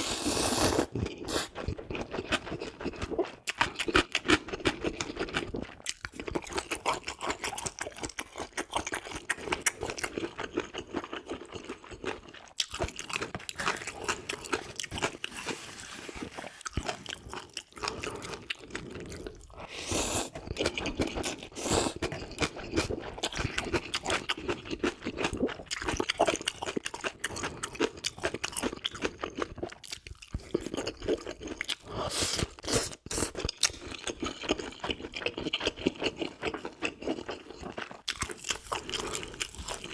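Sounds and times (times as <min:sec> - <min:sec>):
chewing and crunching food: 0:00.0 - 0:39.9.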